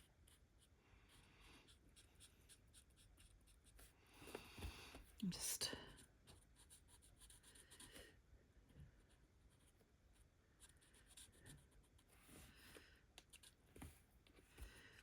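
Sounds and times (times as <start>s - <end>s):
marker scratching on paper: 0.0s - 3.9s.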